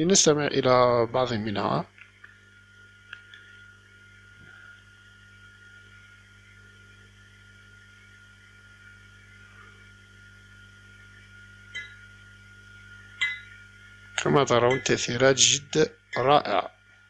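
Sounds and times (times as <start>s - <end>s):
electrical mains hum: 0.0s - 17.0s.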